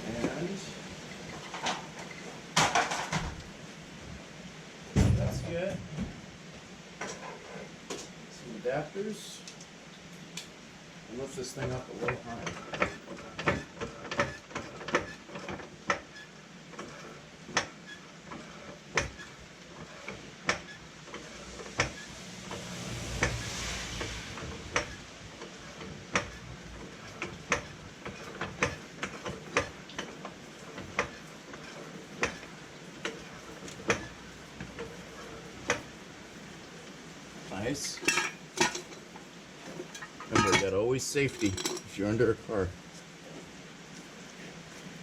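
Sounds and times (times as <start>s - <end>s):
rushing scrape: 22.2s - 25.0s
floor jack pumping clicks: 24.4s - 35.9s.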